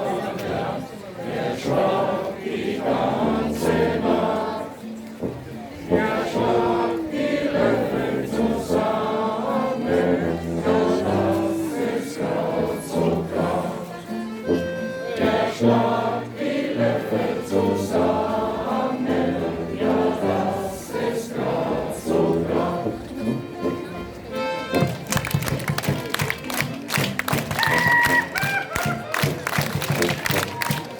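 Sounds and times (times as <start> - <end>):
group of people singing: 0.0 - 4.9, 5.8 - 14.2, 15.1 - 23.4
live folk music: 0.0 - 30.9.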